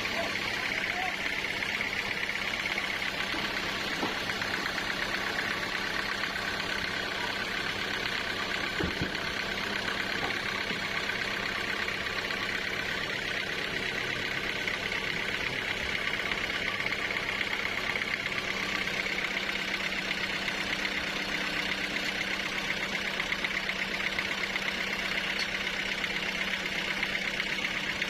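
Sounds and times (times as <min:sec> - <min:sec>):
sawmill machinery hissing: 0:00.0 - 0:06.3.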